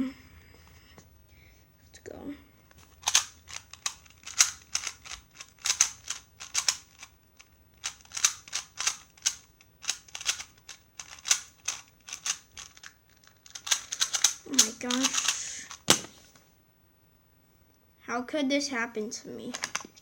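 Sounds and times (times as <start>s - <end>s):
speed cube plastic clicks: 2.7s - 16.3s, 19.5s - 20.0s.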